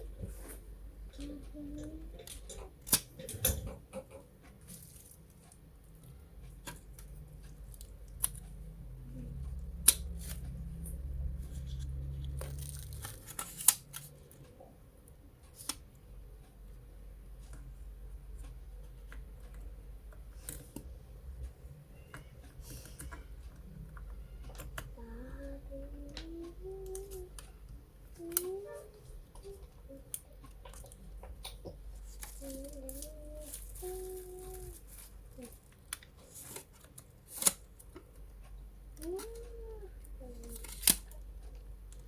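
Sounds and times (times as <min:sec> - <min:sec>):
objects being handled: 0:30.4 - 0:38.2.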